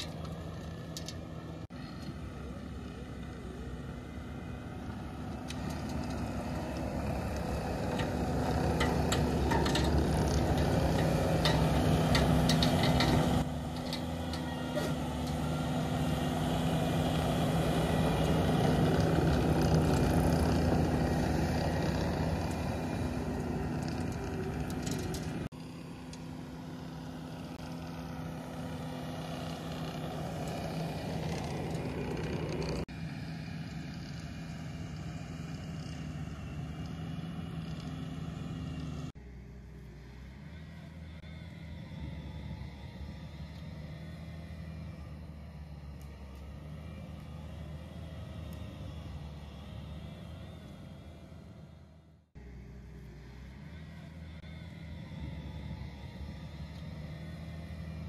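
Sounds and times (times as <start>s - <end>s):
loader engine running under load: 0.0s - 58.0s
clicks and rattles: 7.9s - 14.5s, 23.8s - 25.5s.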